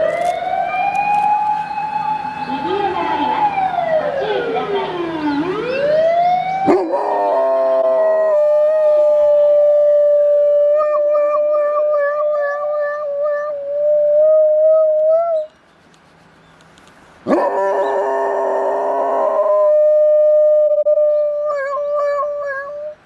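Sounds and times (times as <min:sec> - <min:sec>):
dog howling: 0:06.6 - 0:15.5, 0:17.3 - 0:23.0.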